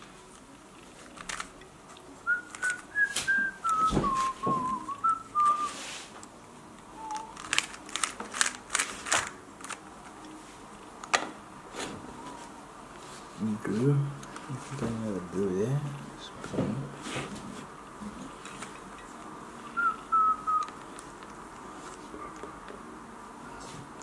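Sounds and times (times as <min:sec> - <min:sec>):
puzzle cube clicks: 0:01.1 - 0:01.6, 0:07.1 - 0:09.8
person whistling a tune: 0:02.2 - 0:05.8, 0:07.0 - 0:07.4, 0:19.8 - 0:20.7.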